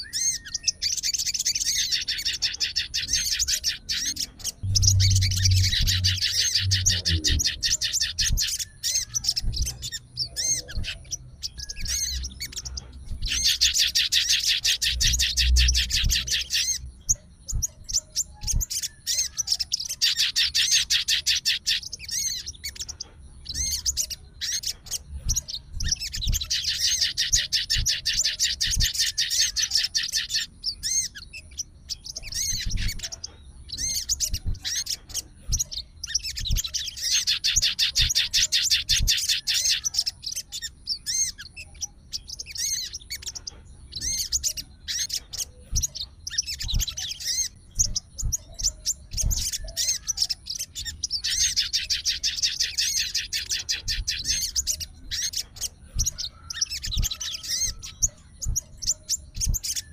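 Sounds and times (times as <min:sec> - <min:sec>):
bird chirps and call notes: 0:00.0 - 0:59.9
songbird trilling: 0:00.0 - 0:59.9.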